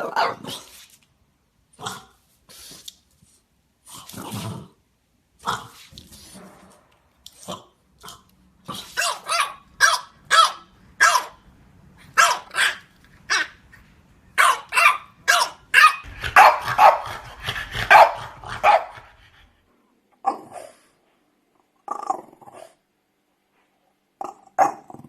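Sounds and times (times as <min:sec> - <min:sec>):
dog barking: 0:08.9 - 0:11.4, 0:12.1 - 0:13.6, 0:14.4 - 0:19.1.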